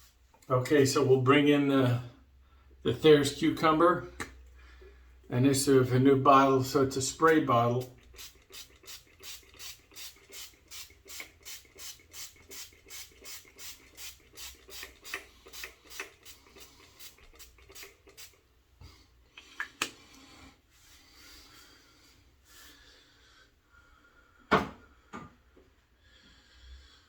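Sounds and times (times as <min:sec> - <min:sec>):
spray bottle hissing: 0:07.8 - 0:18.4.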